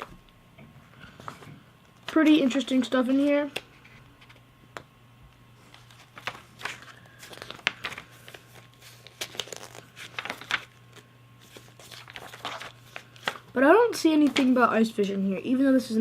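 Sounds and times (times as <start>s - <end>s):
paper pages rustling: 5.6s - 14.7s.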